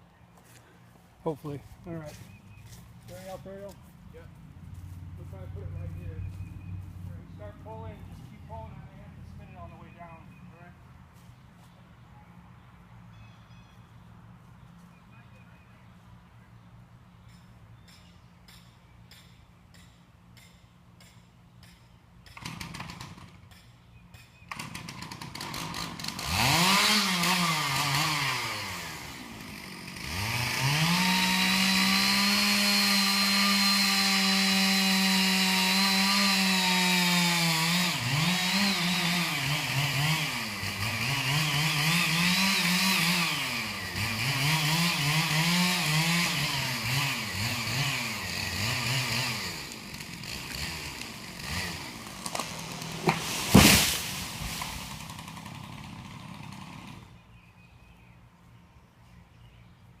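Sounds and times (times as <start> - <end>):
chainsaw revving: 22.4 - 23.4, 24.5 - 57.2.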